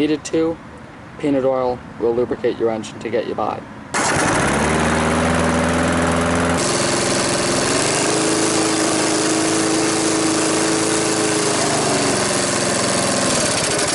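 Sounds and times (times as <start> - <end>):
lawn mower engine running: 3.9 - 13.9.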